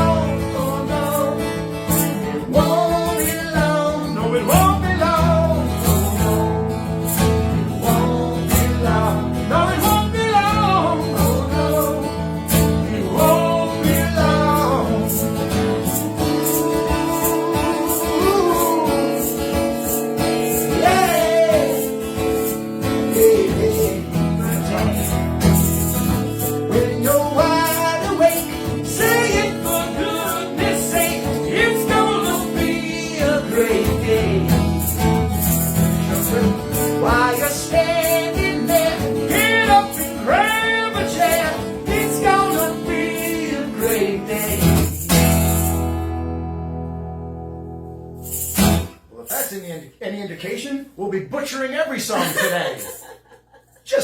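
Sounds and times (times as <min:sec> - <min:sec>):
man singing: 0:00.0 - 0:25.4, 0:26.4 - 0:35.1, 0:36.0 - 0:45.1
guitar accompaniment: 0:00.0 - 0:49.8
woman singing: 0:16.0 - 0:19.2.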